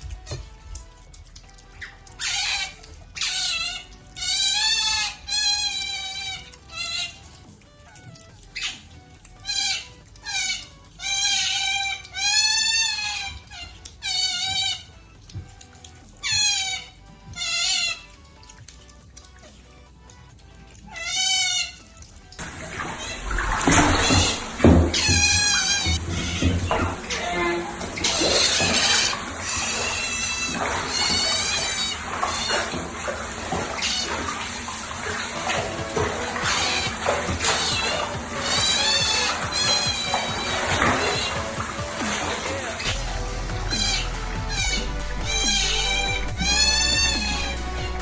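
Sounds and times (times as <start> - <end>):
animal high wavering calls: 1.8 - 7.6, 8.5 - 15.0, 16.2 - 18.2, 20.8 - 42.2, 42.8 - 48.0
steady hiss: 35.3 - 48.0.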